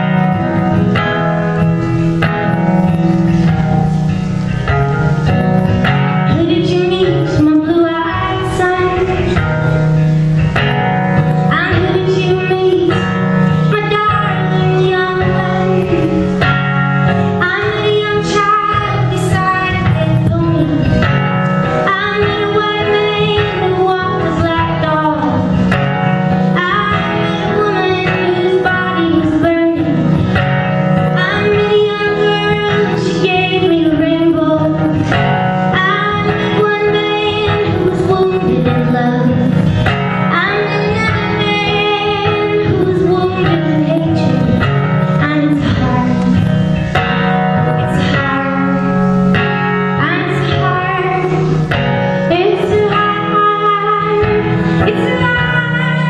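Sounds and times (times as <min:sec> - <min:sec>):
acoustic guitar: 0:00.0 - 0:56.0
woman singing: 0:06.2 - 0:09.5, 0:11.5 - 0:16.5, 0:17.4 - 0:25.6, 0:26.5 - 0:30.2, 0:31.1 - 0:39.6, 0:40.2 - 0:46.5, 0:47.8 - 0:56.0.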